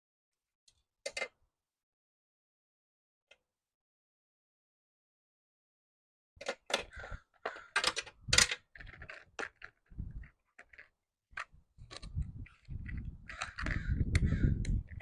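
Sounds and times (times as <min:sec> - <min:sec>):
metal parts and tools clinking: 0:06.4 - 0:13.8.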